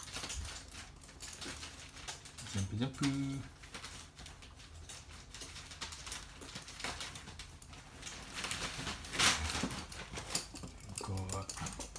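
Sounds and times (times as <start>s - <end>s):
rustling scrape: 7.8s - 10.4s
dog claws tapping on hard floor: 9.6s - 11.9s.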